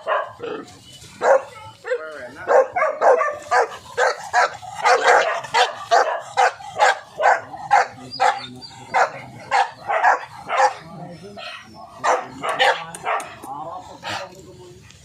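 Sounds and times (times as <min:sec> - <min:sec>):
dog barking sharply: 0:02.5 - 0:07.8.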